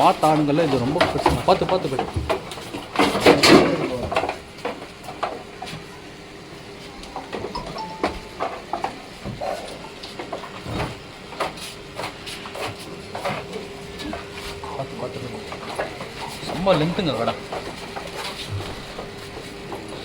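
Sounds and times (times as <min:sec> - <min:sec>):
knocks and rattles of animal handling: 0:00.0 - 0:05.8.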